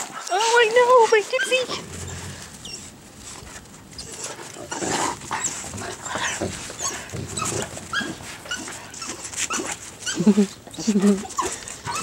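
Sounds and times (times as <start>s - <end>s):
small dog whining: 6.8s - 12.0s.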